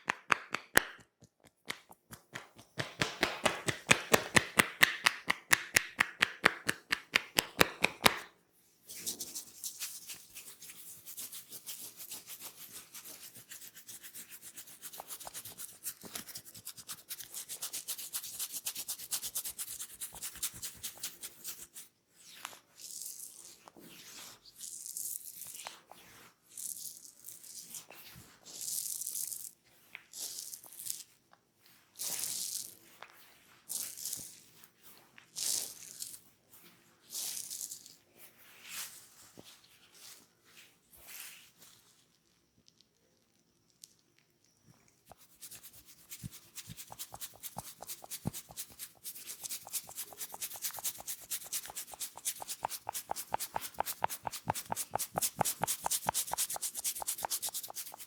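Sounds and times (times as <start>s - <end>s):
fast tapping on head: 0.0s - 8.3s, 45.4s - 58.0s
rubbing and scratching scalp: 8.9s - 21.9s, 45.1s - 58.0s.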